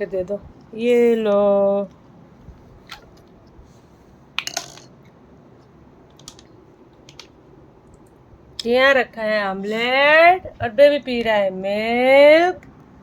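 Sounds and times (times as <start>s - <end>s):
plastic toy pieces clicking: 4.4s - 5.0s, 6.1s - 7.4s.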